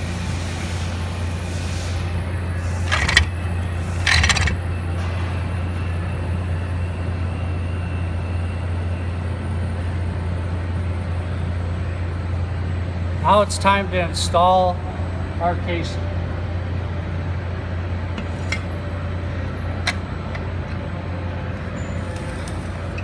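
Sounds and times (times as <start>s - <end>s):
low background hum: 0.0s - 23.0s
handling noises: 2.6s - 5.1s, 18.1s - 23.0s.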